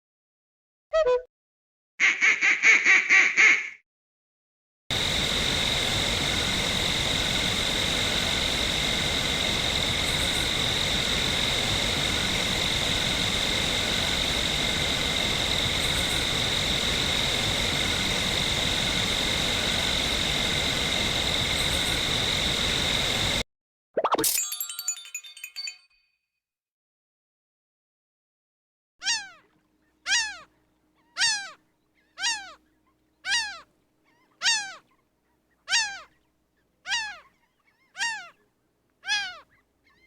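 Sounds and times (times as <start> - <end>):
constant hiss: 4.9 - 23.4
crickets chirping: 4.9 - 23.4.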